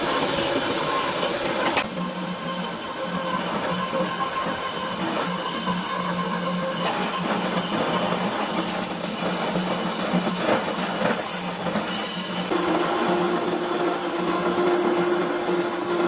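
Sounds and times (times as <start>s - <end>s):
machine humming: 12.5s - 16.0s.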